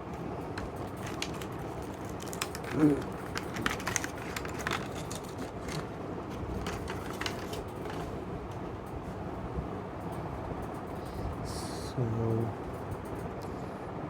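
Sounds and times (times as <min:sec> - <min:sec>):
packaging crinkling and clicking: 0:00.4 - 0:08.2.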